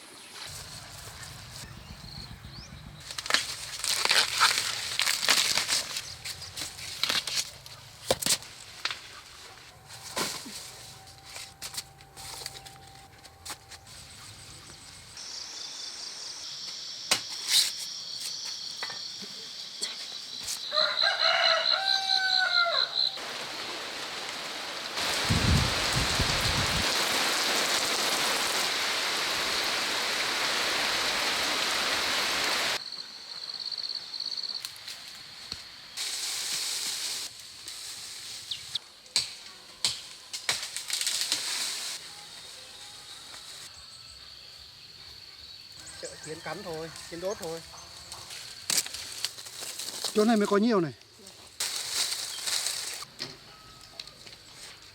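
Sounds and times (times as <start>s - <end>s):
rooster crowing: 20.6s - 23.2s, 45.8s - 47.8s.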